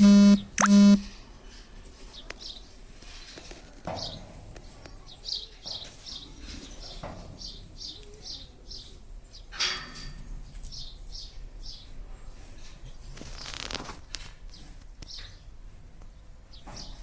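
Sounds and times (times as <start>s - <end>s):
small birds chirping: 2.1s - 2.8s, 4.0s - 9.6s.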